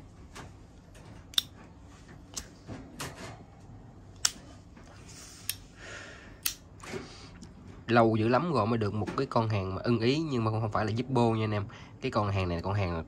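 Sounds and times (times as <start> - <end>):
metal lighter clicks and taps: 1.3 - 1.5.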